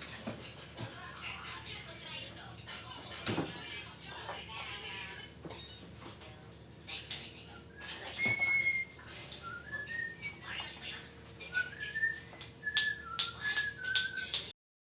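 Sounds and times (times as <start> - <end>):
person whistling a tune: 8.1 - 10.4, 11.5 - 14.5.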